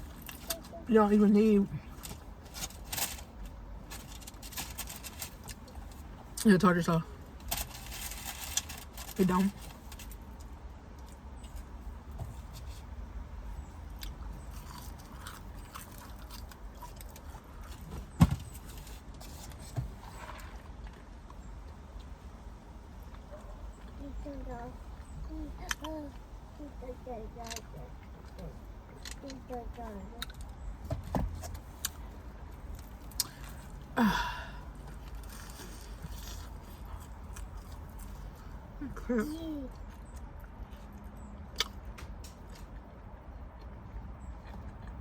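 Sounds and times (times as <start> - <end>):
person chewing food: 13.8 - 17.9, 39.7 - 45.0
person sighing: 34.0 - 34.7.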